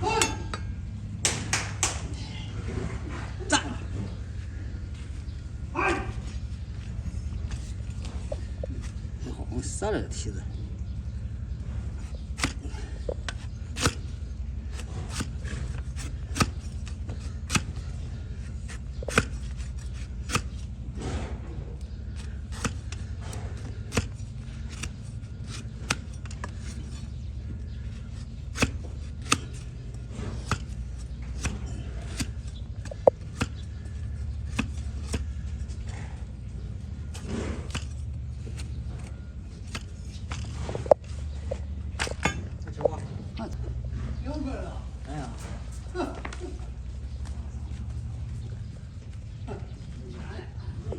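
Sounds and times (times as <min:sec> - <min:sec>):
steady low hum: 0:00.0 - 0:50.9
trimming tool clicking through hoof: 0:11.8 - 0:43.0.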